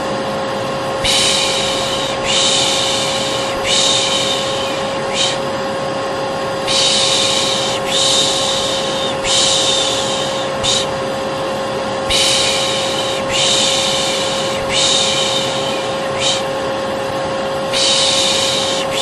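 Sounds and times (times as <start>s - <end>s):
vacuum cleaner running: 0.0s - 19.0s
person shushing: 1.0s - 5.5s, 6.6s - 11.0s, 12.0s - 16.6s, 17.7s - 19.0s.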